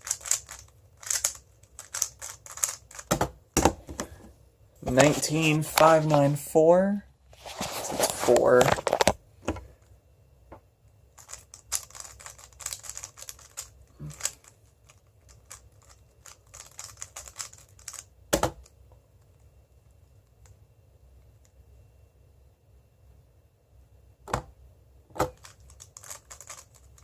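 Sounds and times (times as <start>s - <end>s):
puzzle cube plastic clicks: 0.0s - 3.2s, 11.2s - 18.8s, 25.2s - 27.0s.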